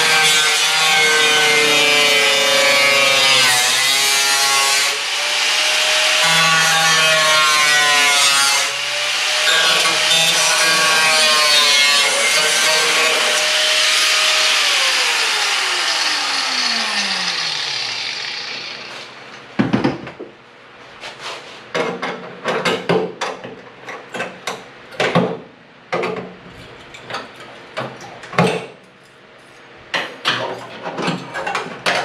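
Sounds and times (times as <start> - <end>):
power tool motor winding down: 12.6 - 19.2.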